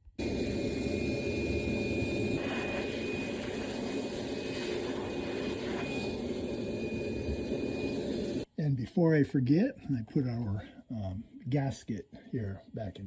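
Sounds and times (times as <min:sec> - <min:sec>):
vacuum cleaner running: 0:00.0 - 0:08.5.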